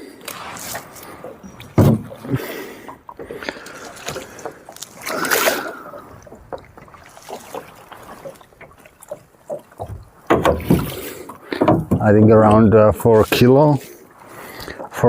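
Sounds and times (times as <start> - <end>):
water splashing against boat: 0.0 - 15.0
knocks and clicks: 9.8 - 12.8.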